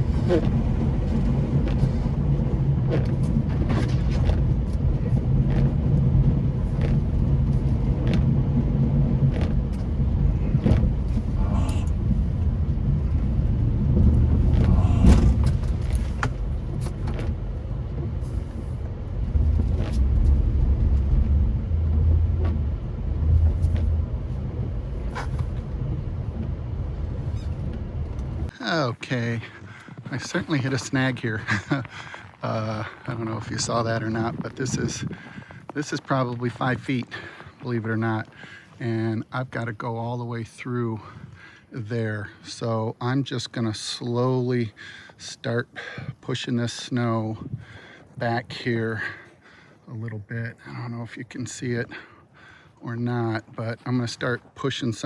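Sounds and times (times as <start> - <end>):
truck engine running: 0.0 - 28.5
knocks and clunks: 0.0 - 28.6.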